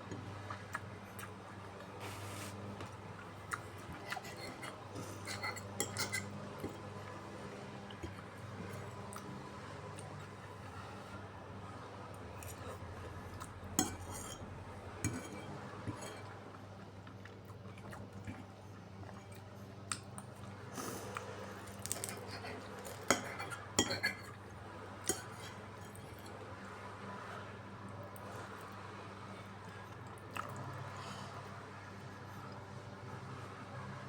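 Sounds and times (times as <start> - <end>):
cutlery clinking against a dish: 4.0 - 6.8, 13.8 - 16.4, 22.9 - 24.4, 25.0 - 26.4.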